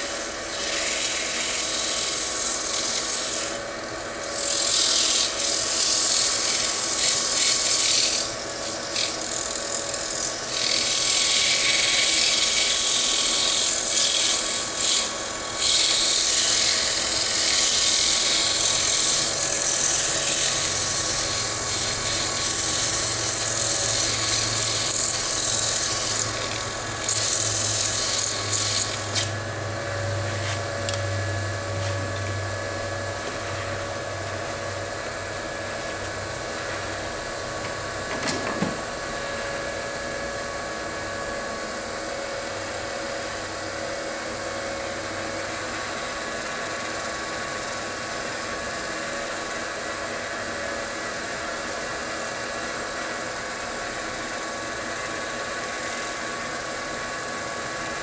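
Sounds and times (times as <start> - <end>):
sanding wood on a lathe: 0.0 - 29.4, 42.4 - 58.0
lathe motor whine: 0.0 - 58.0.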